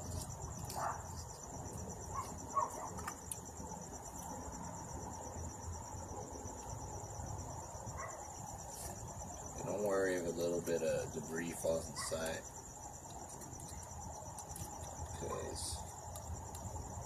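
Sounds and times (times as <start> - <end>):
faint clicks and scrapes: 0.0 - 3.5, 13.0 - 16.8
high-pitched insect trill: 0.0 - 17.0.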